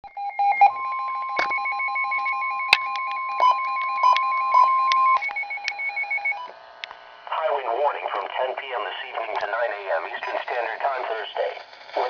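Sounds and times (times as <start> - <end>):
steady high alert tone: 0.0 - 6.5.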